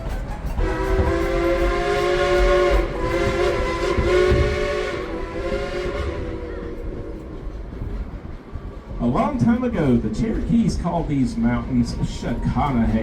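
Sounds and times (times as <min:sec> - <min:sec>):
steam locomotive whistle: 0:00.0 - 0:07.2.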